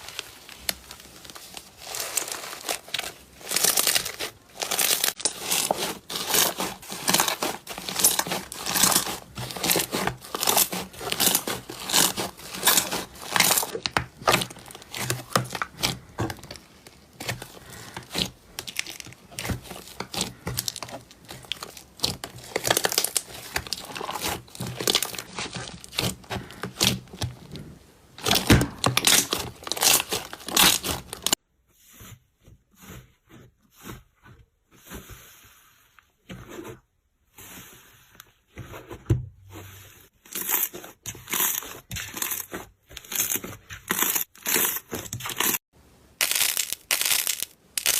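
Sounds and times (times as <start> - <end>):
slime crackling and popping: 0.0 - 27.5, 28.2 - 31.4, 46.2 - 47.9.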